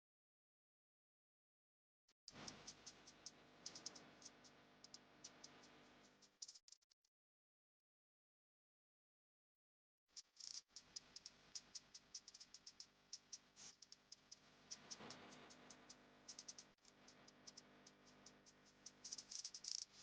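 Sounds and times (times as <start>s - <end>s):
faint small sharp clicks: 2.3s - 7.0s, 10.3s - 20.0s.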